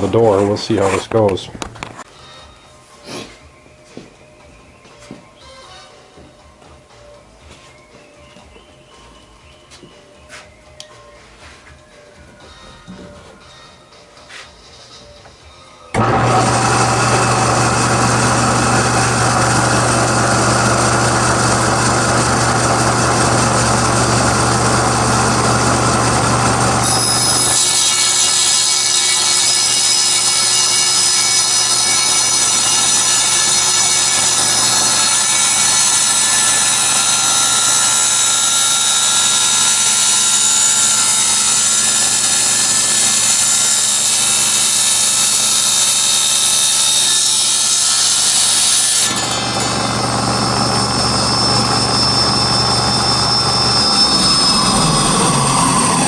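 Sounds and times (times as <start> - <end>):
high ringing blade whine: 15.8 - 56.0
table saw cutting metal: 15.9 - 56.0
low motor hum: 16.0 - 26.9, 49.2 - 56.0.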